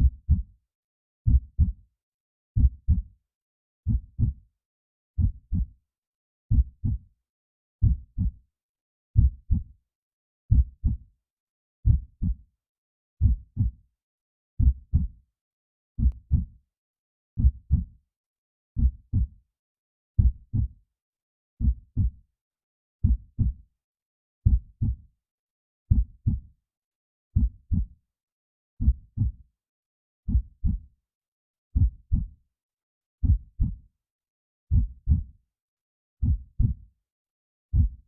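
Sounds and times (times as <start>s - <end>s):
heartbeat thumps: 33.2s - 33.7s, 36.2s - 36.7s, 37.8s - 38.0s.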